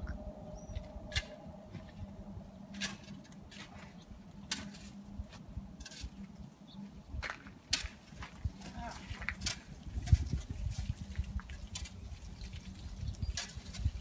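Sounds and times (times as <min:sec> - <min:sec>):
faint low hum: 0:00.0 - 0:13.3
footsteps crunching on icy snow: 0:06.2 - 0:13.2.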